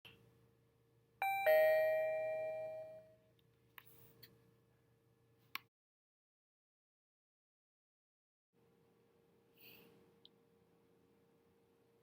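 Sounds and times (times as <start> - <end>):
electronic doorbell chime: 1.2 - 3.2.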